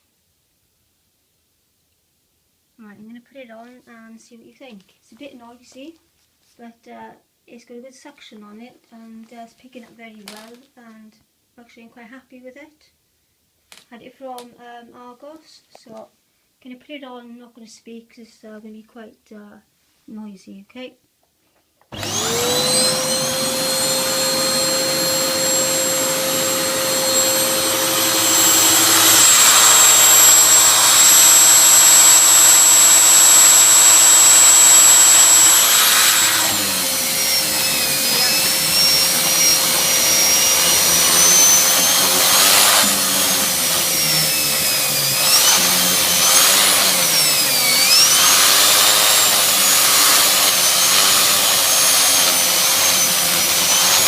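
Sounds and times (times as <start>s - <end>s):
vacuum cleaner motor whining: 21.9s - 54.0s.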